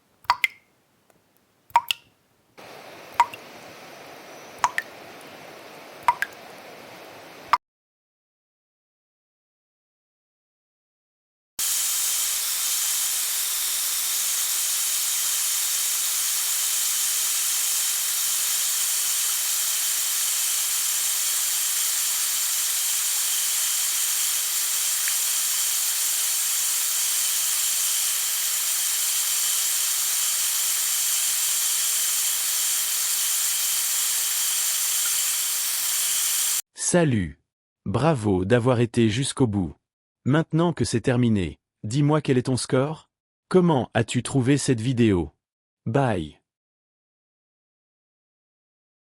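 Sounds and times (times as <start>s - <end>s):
water hissing: 2.6s - 7.5s, 11.6s - 36.6s.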